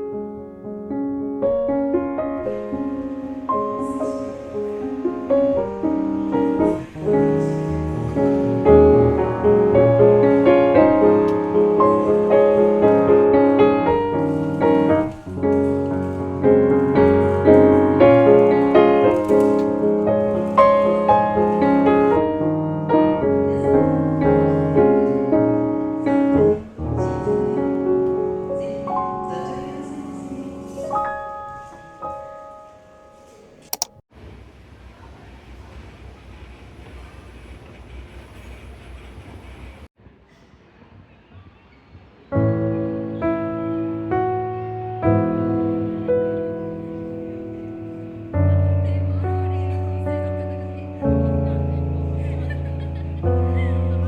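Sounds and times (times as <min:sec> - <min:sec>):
gentle piano music: 0:00.0 - 0:34.0, 0:42.3 - 0:54.0.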